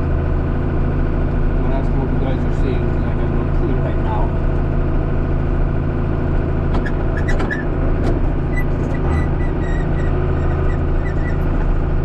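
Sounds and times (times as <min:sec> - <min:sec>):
heavy farm engine running: 0:00.0 - 0:12.0
faint high squeak: 0:06.8 - 0:07.7, 0:08.5 - 0:11.8.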